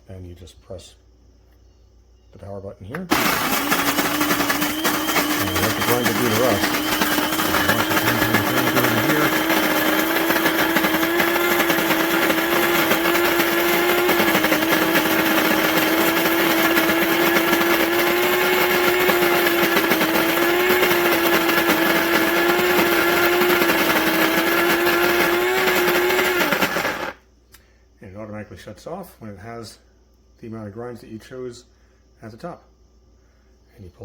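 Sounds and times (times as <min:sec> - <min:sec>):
coffee grinder whining: 0:03.0 - 0:27.2.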